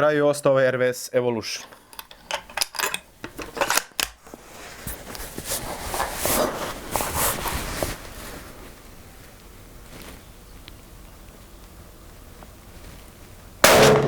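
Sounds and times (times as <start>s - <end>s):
handling clicks and knocks: 1.6s - 8.0s
soft scraping and rustling: 1.6s - 10.7s.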